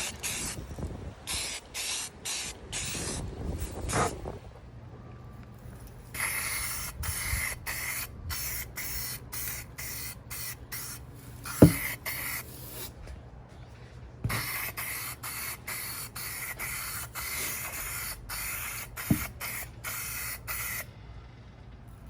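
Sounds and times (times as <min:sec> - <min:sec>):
spray paint can hissing bursts: 0:00.0 - 0:00.6, 0:01.2 - 0:03.3, 0:06.1 - 0:12.9, 0:14.3 - 0:20.9
sharp knock: 0:11.6 - 0:12.0, 0:19.1 - 0:19.3.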